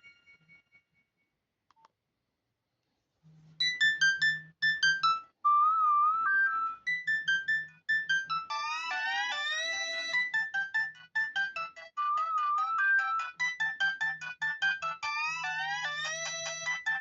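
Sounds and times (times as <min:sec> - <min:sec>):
electronic ringtone melody: 0:03.6 - 0:17.0.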